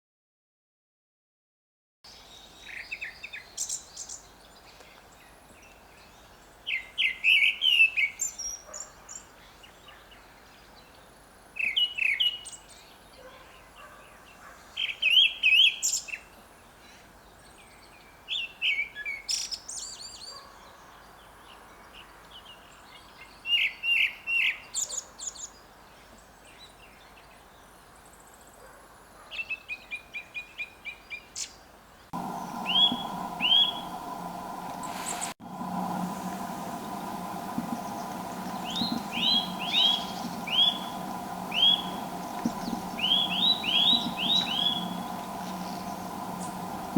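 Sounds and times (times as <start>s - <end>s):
thrush singing whistled notes: 32.2s - 46.9s.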